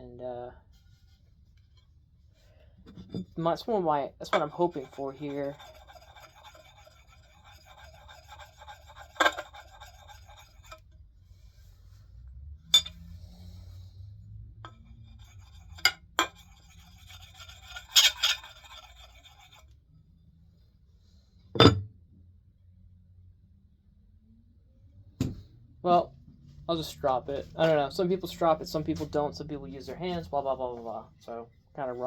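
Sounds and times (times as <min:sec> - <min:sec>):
hone rubbing on axe edge: 0:04.3 - 0:10.8, 0:15.2 - 0:19.6.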